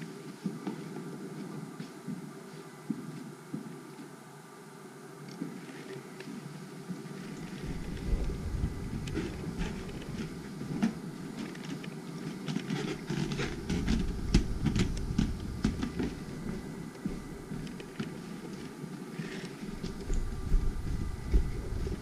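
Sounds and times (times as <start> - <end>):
camera handling rumble: 7.4 - 16.5.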